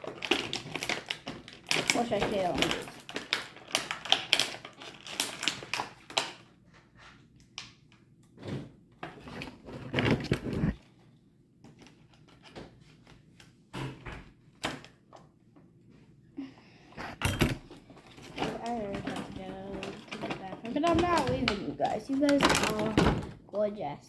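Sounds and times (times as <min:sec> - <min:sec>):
plastic packaging crinkling: 0:00.0 - 0:06.5, 0:17.9 - 0:23.4.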